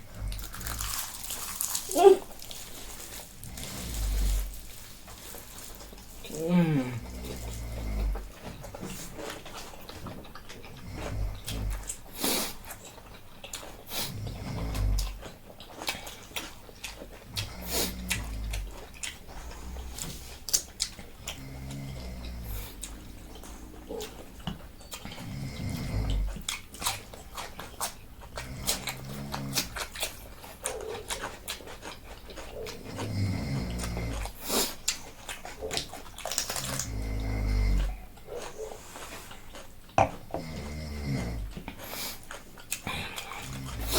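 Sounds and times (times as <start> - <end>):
wet chewing and slurping: 0.0 - 43.9.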